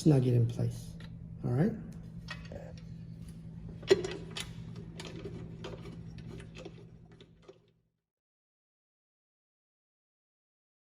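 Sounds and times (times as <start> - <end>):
steady low hum: 0.0 - 7.8.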